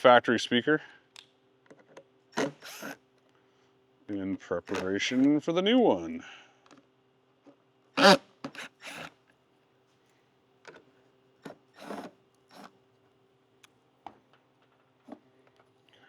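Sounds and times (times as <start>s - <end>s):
tools clicking and scraping: 1.7s - 3.0s, 8.0s - 9.1s, 11.4s - 12.8s.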